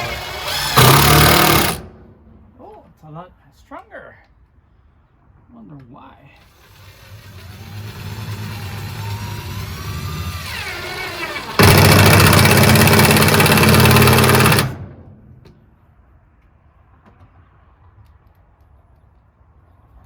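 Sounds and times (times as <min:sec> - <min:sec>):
power driver motor running: 0:00.0 - 0:01.9, 0:06.6 - 0:14.8
rapid hammering whir: 0:00.0 - 0:02.0, 0:06.6 - 0:15.2.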